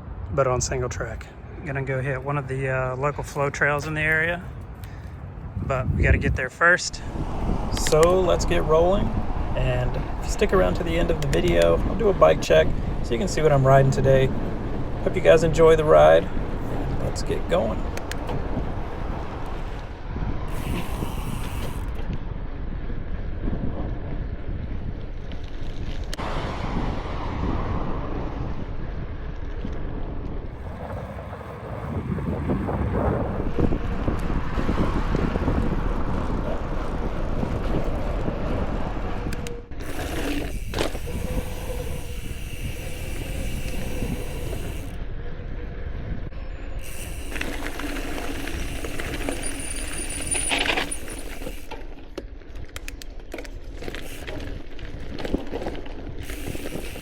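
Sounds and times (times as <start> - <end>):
bike tyre and road noise: 0.0 - 57.0
wind on microphone: 3.2 - 53.0, 53.7 - 57.0
bike rattling: 7.0 - 26.4, 27.7 - 57.0.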